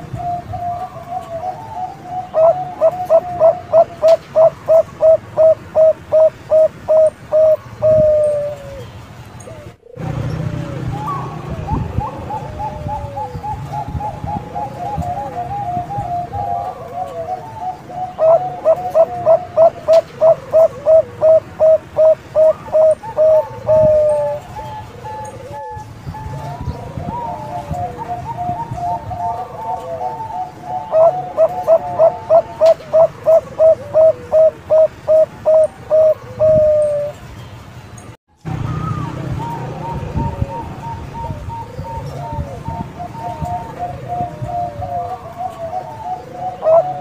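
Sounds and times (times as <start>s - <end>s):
dove cooing: 0.0s - 37.2s, 38.5s - 47.0s.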